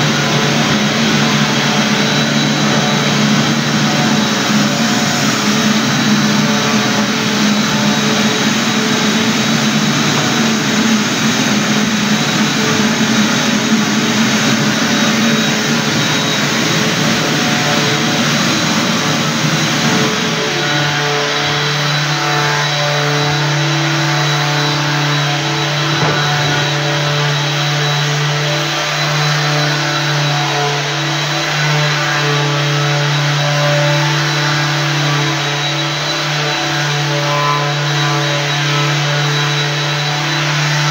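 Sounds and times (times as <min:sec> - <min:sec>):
thin high whine: 0:00.0 - 0:31.5
floor-care machine motor drone: 0:00.0 - 0:40.9.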